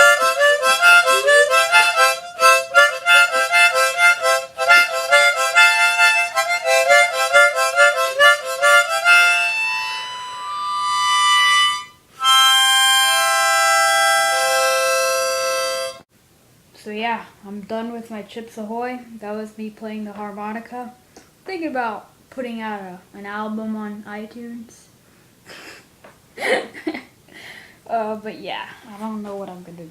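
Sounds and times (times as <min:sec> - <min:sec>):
harmonica playing: 0:00.0 - 0:16.1.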